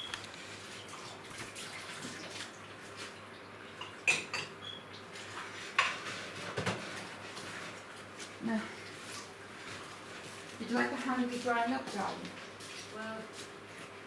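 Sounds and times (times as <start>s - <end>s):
dishes and cutlery clinking: 3.8s - 4.6s
dishes clattering: 3.8s - 4.6s.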